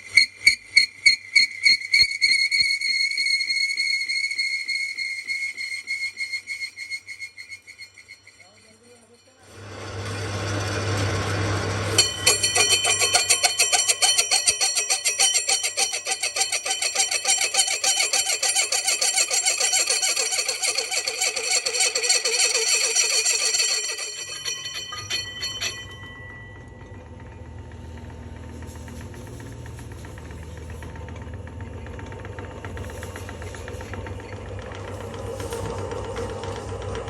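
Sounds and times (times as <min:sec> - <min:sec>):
low machine hum: 0:09.3 - 0:16.6, 0:23.4 - 0:37.0
metal ringing under rapid strikes: 0:11.9 - 0:26.8.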